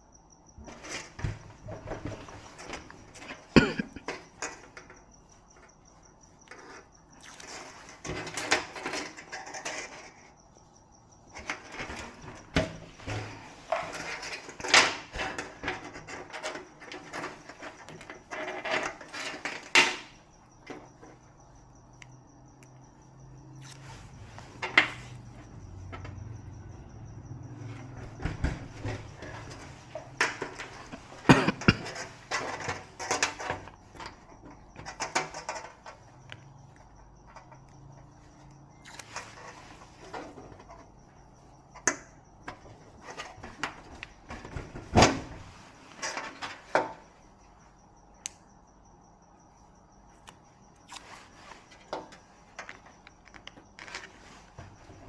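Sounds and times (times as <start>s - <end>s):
high insect trill: 0.0s - 55.0s
tools and parts clinking: 6.5s - 10.4s, 11.4s - 21.3s, 27.7s - 40.9s.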